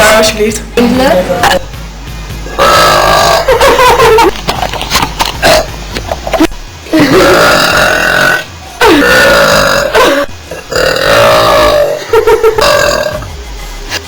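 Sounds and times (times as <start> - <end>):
girls burping loudly: 2.5 - 4.3, 5.4 - 13.2.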